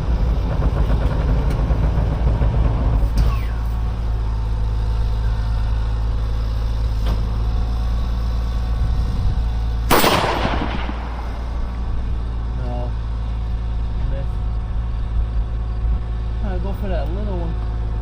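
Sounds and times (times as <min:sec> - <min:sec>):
steady low rumble: 0:00.0 - 0:18.0
rifle shot with echo: 0:09.9 - 0:11.8.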